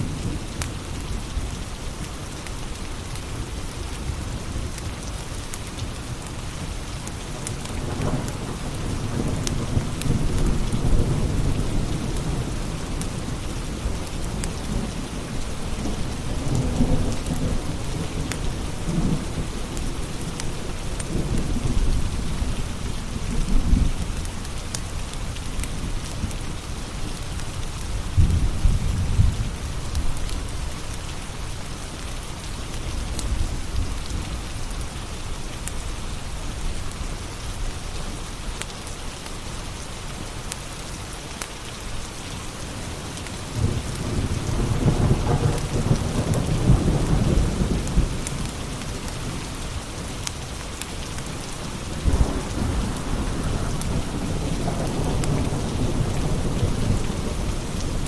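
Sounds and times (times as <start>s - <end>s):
steady rain: 0.0s - 58.0s
rolling thunder: 28.0s - 30.2s, 51.2s - 58.0s.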